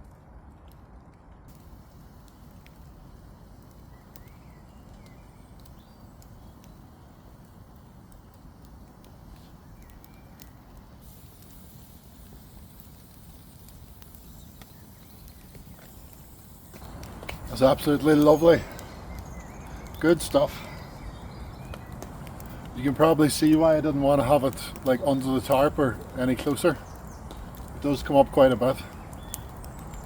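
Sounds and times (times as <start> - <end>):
wood fire crackling and popping: 0.0 - 30.0
faint bird chirps: 1.7 - 10.5, 11.2 - 22.0.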